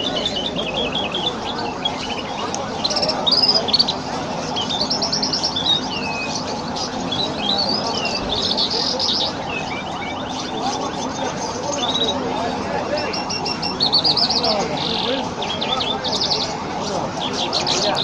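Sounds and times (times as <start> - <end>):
low background hubbub: 0.0 - 18.0
small birds chirping and trilling: 0.0 - 18.0.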